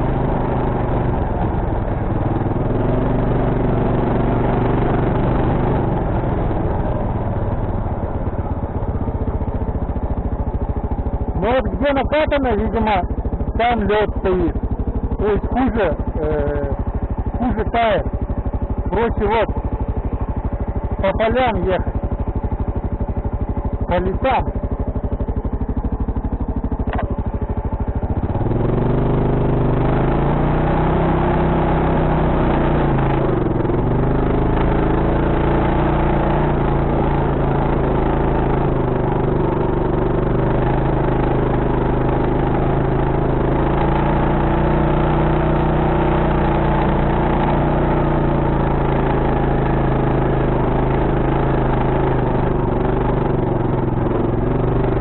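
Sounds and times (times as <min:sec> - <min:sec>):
atv engine revving: 0:00.0 - 0:55.0.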